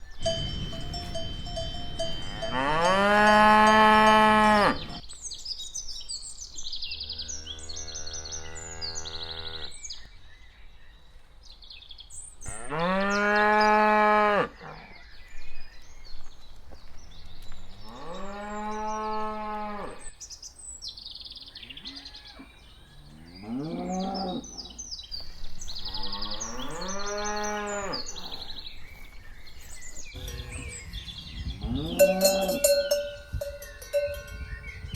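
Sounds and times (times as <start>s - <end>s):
cows mooing: 0.2s - 5.0s, 23.1s - 24.7s, 30.2s - 34.3s.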